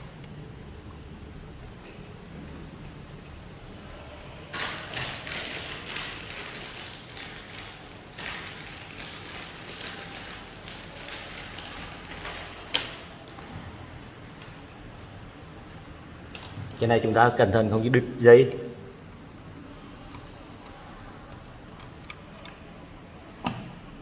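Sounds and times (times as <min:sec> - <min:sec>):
laptop parts clicking and rattling: 0:04.5 - 0:13.0, 0:20.0 - 0:22.8.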